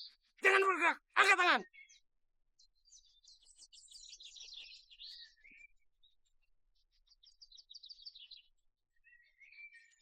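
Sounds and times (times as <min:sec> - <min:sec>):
small birds chirping: 0:02.8 - 0:05.6.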